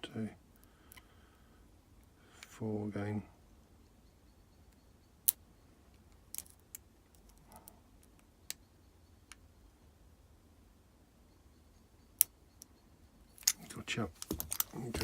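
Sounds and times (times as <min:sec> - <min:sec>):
lock pick metallic clicks: 0:13.4 - 0:14.8.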